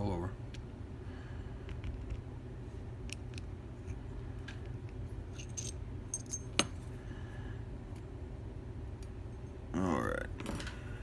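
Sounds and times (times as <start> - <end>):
metal pins clinking: 5.3 - 7.0.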